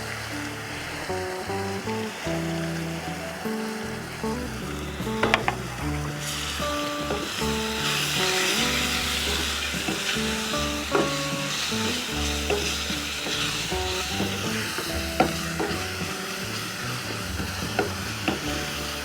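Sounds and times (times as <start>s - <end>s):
background music: 0.0s - 19.0s
food sizzling in hot oil: 0.0s - 19.0s
utensil clicking against pan: 5.1s - 19.0s.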